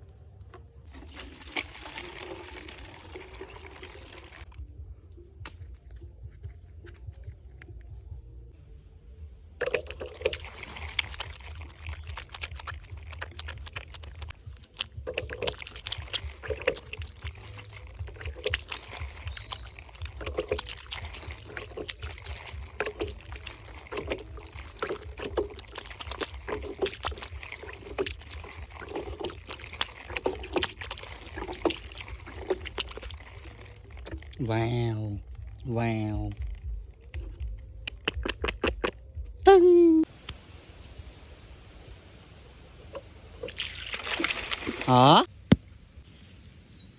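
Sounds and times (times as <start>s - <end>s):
water pouring and sloshing: 0.0s - 4.7s, 9.6s - 39.0s, 43.4s - 45.6s.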